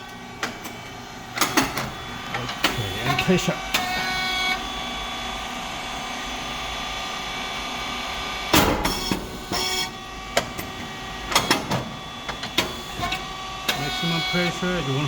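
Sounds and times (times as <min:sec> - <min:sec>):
pump motor and fan hum: 0:00.0 - 0:15.0
mechanical clicks and clanks: 0:00.4 - 0:04.0, 0:10.4 - 0:13.9.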